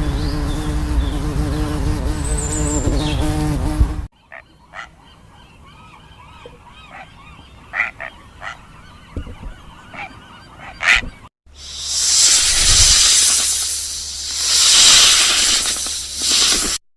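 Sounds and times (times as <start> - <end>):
short sharp bird calls: 4.2 - 11.2
faint bird calls: 4.2 - 11.3.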